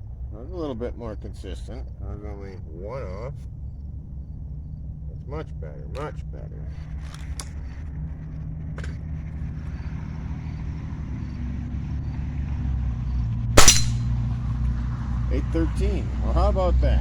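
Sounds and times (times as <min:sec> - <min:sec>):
air rifle shot: 0:13.6 - 0:14.1.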